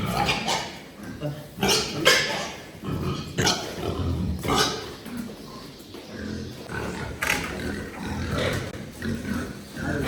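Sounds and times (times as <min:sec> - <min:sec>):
pigs squealing: 0:00.0 - 0:01.0, 0:01.6 - 0:05.0
pigs grunting: 0:00.0 - 0:10.0.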